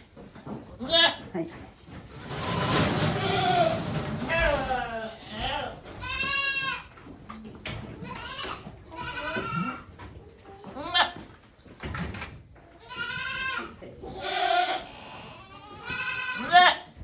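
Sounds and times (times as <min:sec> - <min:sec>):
goats bleating: 0:03.1 - 0:06.9, 0:08.0 - 0:09.9, 0:10.7 - 0:11.2, 0:12.8 - 0:17.0.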